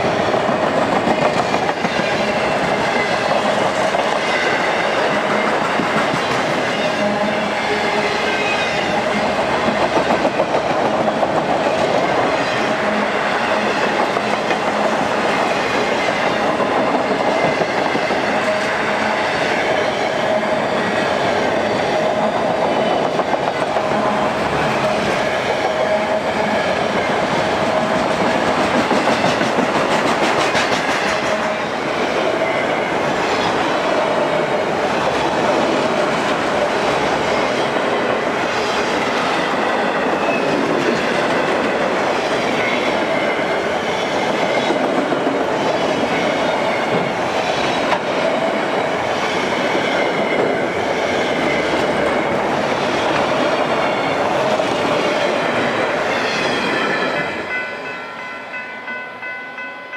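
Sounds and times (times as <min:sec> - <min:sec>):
freight train wheels rolling: 0:00.0 - 0:59.7.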